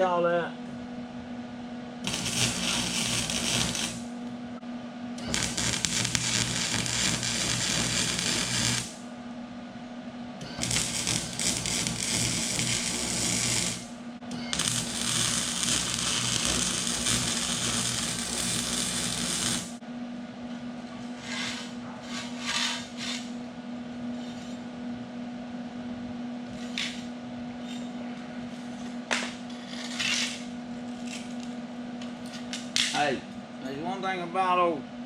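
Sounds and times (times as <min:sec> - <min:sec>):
steady hum: 0:00.0 - 0:35.0
crackling hiss of welding arc: 0:02.0 - 0:04.1, 0:05.2 - 0:09.0, 0:10.4 - 0:19.8.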